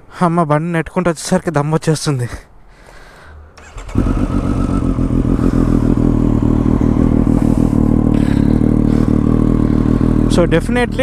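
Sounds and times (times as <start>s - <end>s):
motorcycle engine idling loudly: 3.7s - 11.0s.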